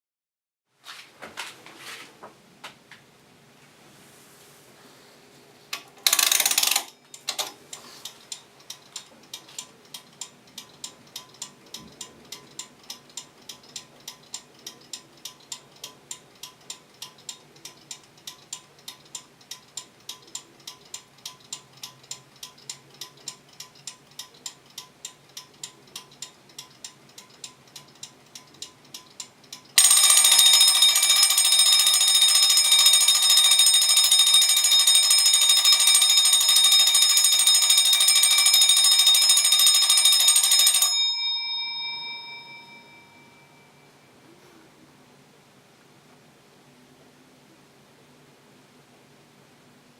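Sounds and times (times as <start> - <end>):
electric bell ringing: 6.0 - 7.1, 29.8 - 44.0
clockwork ticking: 6.0 - 42.8
timer clatter: 6.0 - 43.2.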